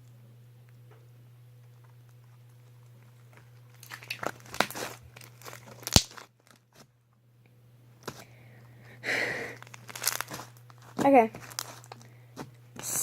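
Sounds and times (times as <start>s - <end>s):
slime squished crackling: 3.8s - 4.9s.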